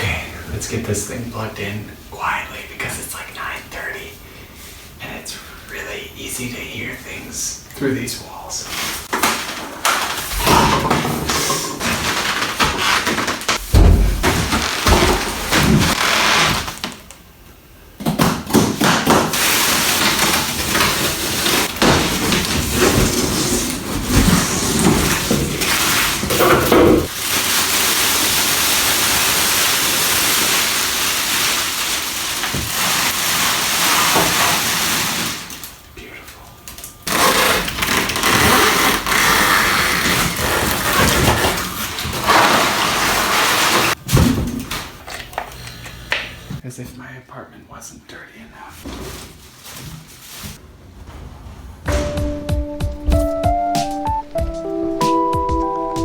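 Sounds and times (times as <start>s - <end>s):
packaging crinkling and rustling: 8.7s - 17.2s, 19.2s - 35.8s, 36.7s - 45.6s, 48.9s - 50.6s
rustling: 48.8s - 52.2s.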